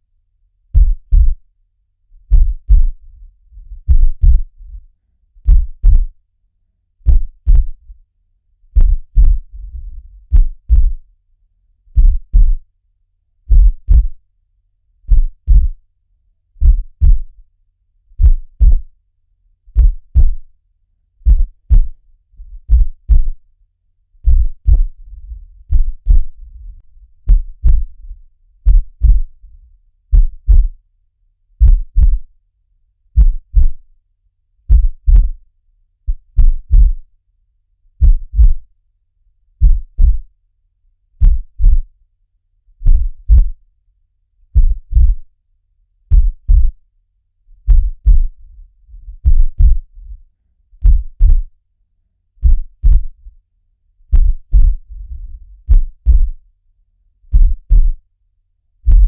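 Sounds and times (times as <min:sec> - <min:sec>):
heartbeat thumps: 0:00.8 - 0:01.4, 0:02.3 - 0:03.0, 0:03.6 - 0:04.8, 0:05.4 - 0:06.2, 0:07.0 - 0:07.9, 0:08.8 - 0:11.0, 0:12.0 - 0:12.6, 0:13.5 - 0:14.2, 0:15.1 - 0:15.8, 0:16.6 - 0:17.4, 0:18.2 - 0:18.9, 0:19.7 - 0:20.5, 0:21.2 - 0:23.4, 0:24.2 - 0:29.4, 0:30.1 - 0:30.8, 0:31.6 - 0:32.3, 0:33.2 - 0:33.8, 0:34.7 - 0:35.4, 0:36.1 - 0:37.1, 0:38.0 - 0:38.7, 0:39.6 - 0:40.3, 0:41.2 - 0:41.9, 0:42.8 - 0:43.6, 0:44.5 - 0:45.3, 0:46.1 - 0:46.8, 0:47.6 - 0:50.2, 0:50.8 - 0:51.5, 0:52.4 - 0:53.2, 0:54.1 - 0:56.4, 0:57.3 - 0:58.0.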